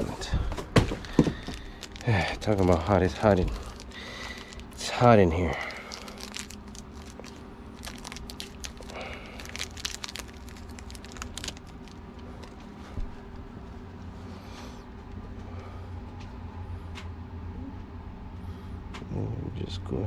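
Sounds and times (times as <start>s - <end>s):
packaging rustling and crinkling: 0.0s - 12.8s
low hum: 0.0s - 20.0s.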